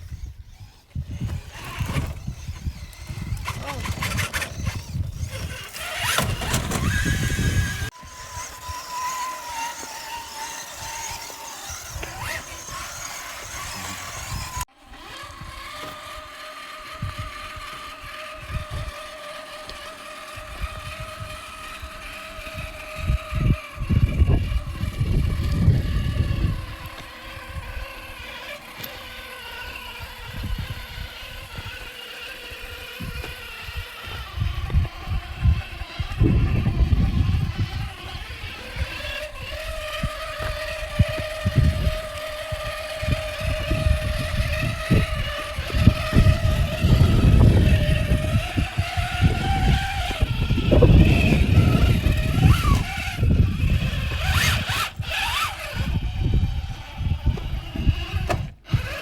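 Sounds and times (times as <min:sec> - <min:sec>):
electric motor and gears whining: 0:00.0 - 0:59.0
wind on microphone: 0:00.0 - 0:59.0.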